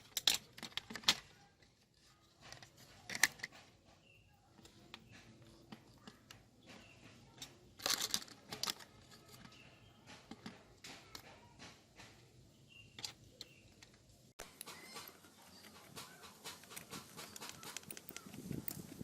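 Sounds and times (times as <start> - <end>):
small parts and tools clicking: 0.0 - 19.0
scraping clicks: 12.9 - 19.0.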